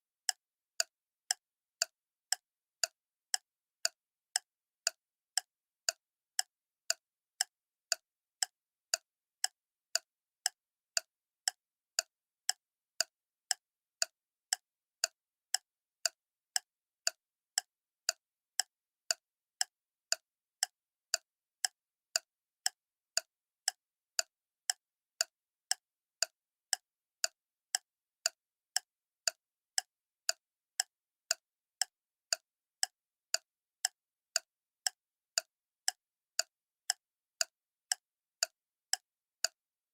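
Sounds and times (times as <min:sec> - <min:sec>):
clock ticking: 0:00.3 - 0:39.6.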